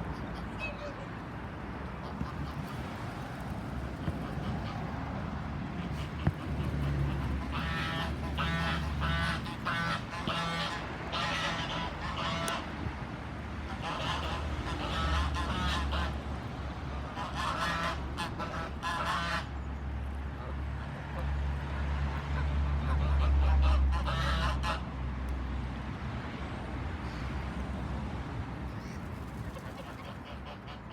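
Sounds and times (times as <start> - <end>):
geese honking: 5.8 - 12.7, 13.7 - 16.2, 17.1 - 19.5, 22.7 - 24.8.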